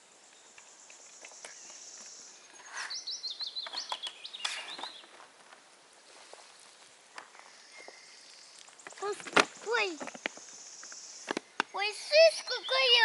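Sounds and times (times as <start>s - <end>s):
songbird singing: 0.0s - 5.3s, 6.2s - 13.0s.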